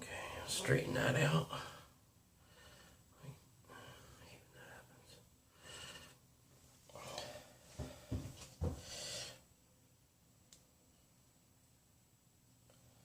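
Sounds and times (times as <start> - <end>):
soft breaths: 1.5 - 9.6.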